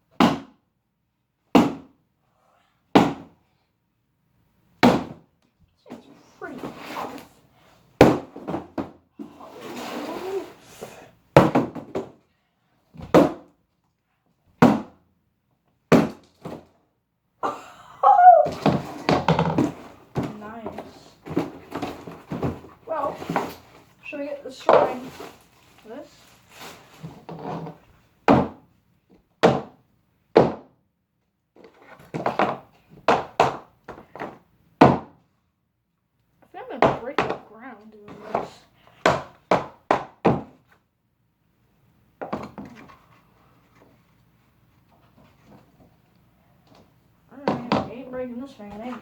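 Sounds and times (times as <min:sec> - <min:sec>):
thuds on cardboard box: 0:00.2 - 0:00.6, 0:01.6 - 0:02.0, 0:03.0 - 0:03.4, 0:04.8 - 0:05.2, 0:08.0 - 0:09.0, 0:11.4 - 0:12.2, 0:13.0 - 0:13.5, 0:14.6 - 0:15.0, 0:15.9 - 0:16.7, 0:18.5 - 0:23.6, 0:28.3 - 0:28.6, 0:29.4 - 0:29.8, 0:30.4 - 0:30.7, 0:32.0 - 0:35.2, 0:38.3 - 0:40.6.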